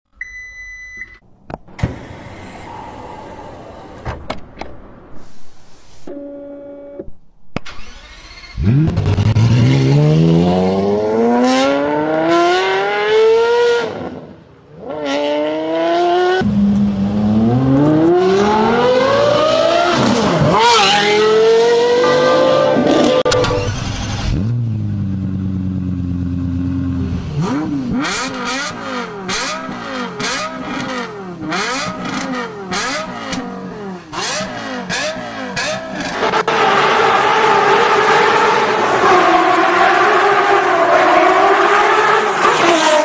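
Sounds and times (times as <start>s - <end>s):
short beep: 0.1s - 1.2s
car engine accelerating hard: 7.8s - 43.0s.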